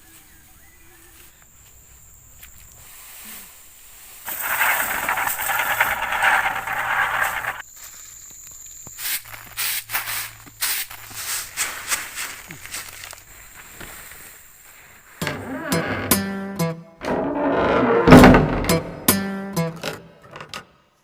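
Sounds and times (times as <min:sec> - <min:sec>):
rice stalks rustling crackles: 0:00.0 - 0:15.2
thresher drum hissing: 0:04.3 - 0:07.6.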